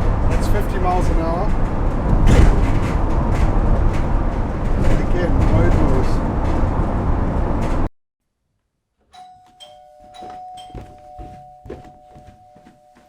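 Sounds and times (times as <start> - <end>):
road noise inside van: 0.0 - 7.9
thumps: 0.0 - 7.9
two-tone doorbell chime: 9.1 - 13.0.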